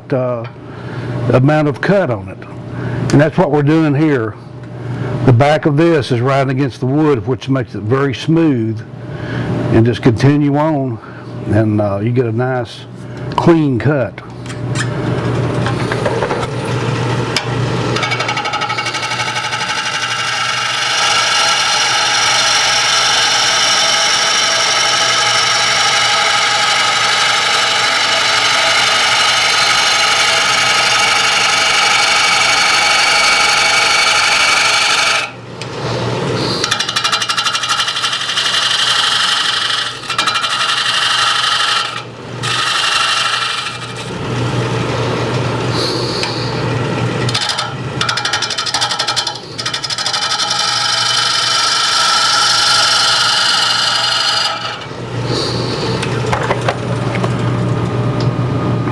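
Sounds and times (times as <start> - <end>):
lathe gouge chattering on wood: 18.0 - 35.3, 36.6 - 44.1, 47.3 - 54.8.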